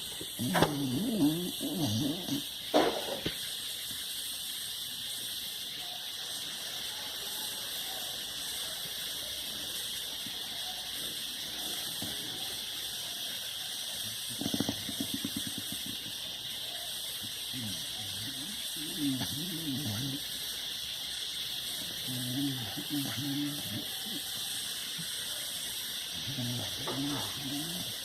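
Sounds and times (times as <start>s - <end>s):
steady hiss: 0.0s - 28.0s
dog snoring: 0.2s - 2.9s, 14.2s - 16.1s, 17.5s - 20.3s, 22.0s - 24.2s, 26.2s - 28.0s.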